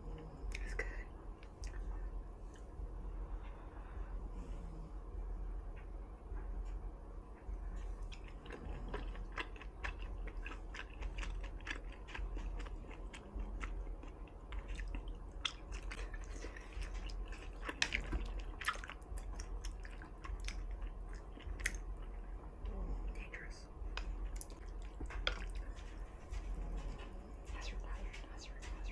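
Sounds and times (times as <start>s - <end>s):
close-miked chewing: 0.1s - 2.7s, 7.4s - 28.9s.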